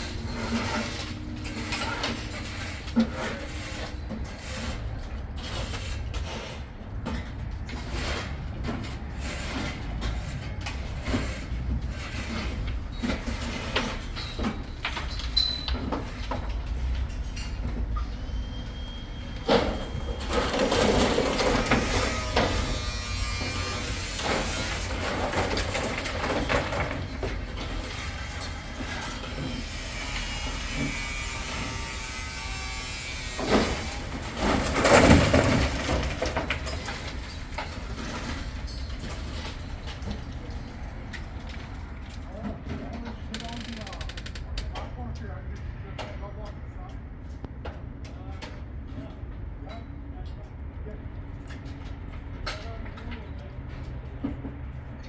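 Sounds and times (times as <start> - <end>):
rough machine noise: 0.0 - 15.4, 16.0 - 42.2
knocks and clanks: 0.0 - 50.5.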